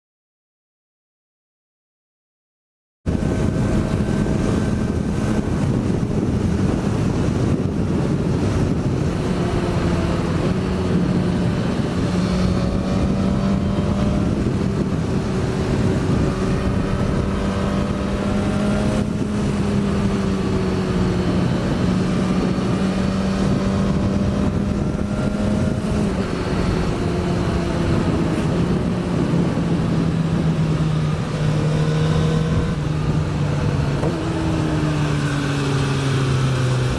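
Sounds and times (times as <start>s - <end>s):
motorcycle engine running: 3.1s - 36.9s
wind rushing past microphone: 3.1s - 36.9s.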